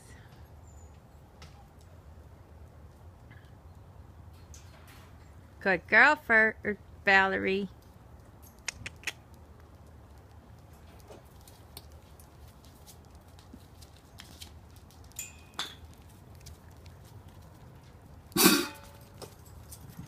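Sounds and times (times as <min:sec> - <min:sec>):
puppies pattering: 0:15.9 - 0:18.2.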